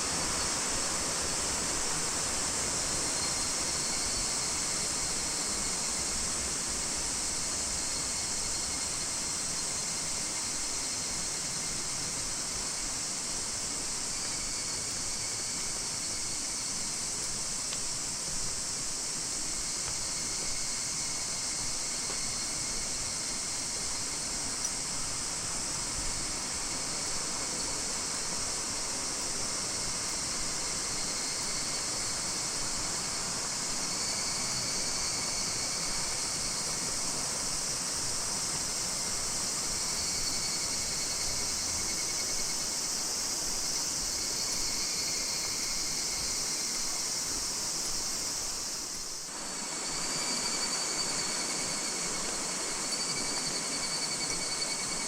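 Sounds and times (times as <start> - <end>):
cicadas shrilling: 0.0 - 55.0.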